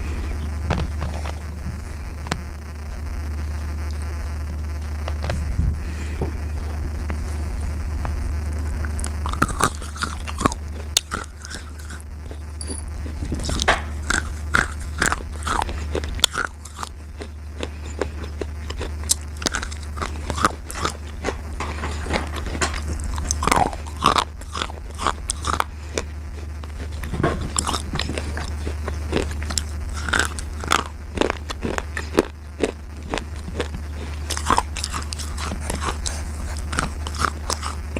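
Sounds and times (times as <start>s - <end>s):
steady low hum: 0.0s - 37.9s
chewing crunches: 8.7s - 37.9s.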